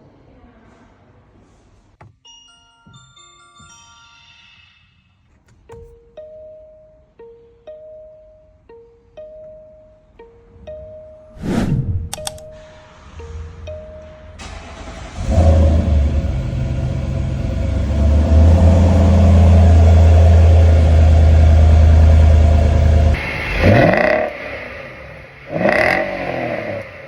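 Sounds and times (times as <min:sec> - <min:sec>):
car engine starting: 0:11.8 - 0:27.0
car engine idling and revving: 0:13.0 - 0:27.0.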